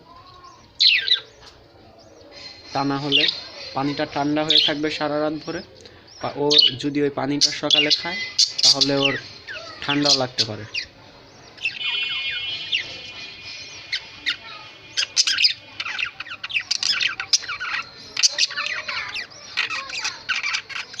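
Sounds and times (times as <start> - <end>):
budgerigars chirping: 0.4 - 21.0
buzzing bird trill: 11.6 - 21.0.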